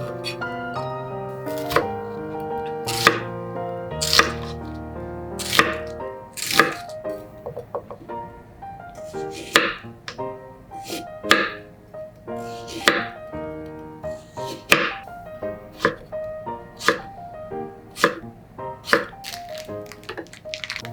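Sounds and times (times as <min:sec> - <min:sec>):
knife chopping on cutting board: 0:00.0 - 0:00.5, 0:01.5 - 0:02.0, 0:02.8 - 0:03.3, 0:04.0 - 0:04.6, 0:05.4 - 0:08.0, 0:09.1 - 0:09.8, 0:10.8 - 0:11.6, 0:12.4 - 0:13.2, 0:14.3 - 0:15.0, 0:15.8 - 0:16.0, 0:16.8 - 0:17.1, 0:18.0 - 0:18.2, 0:18.8 - 0:19.7
background music: 0:00.0 - 0:20.9.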